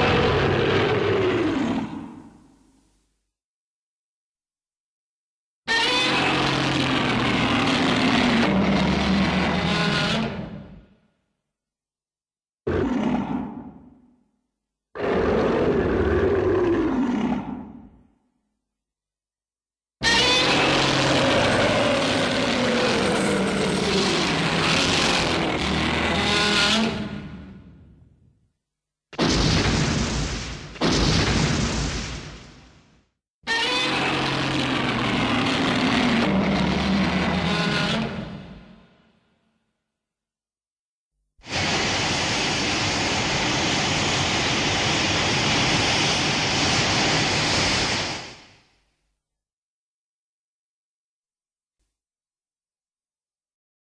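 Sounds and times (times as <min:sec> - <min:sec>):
monster roar: 0:00.0 - 0:02.3, 0:05.9 - 0:10.6, 0:12.7 - 0:13.8, 0:15.0 - 0:17.9, 0:20.1 - 0:27.4, 0:33.8 - 0:38.5.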